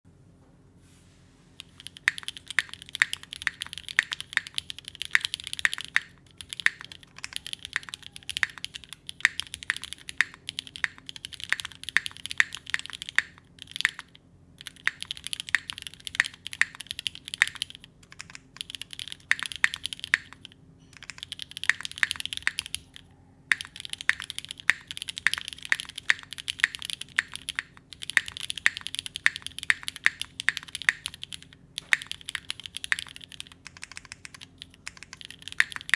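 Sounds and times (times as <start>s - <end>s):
mechanical keyboard typing: 1.6s - 35.9s.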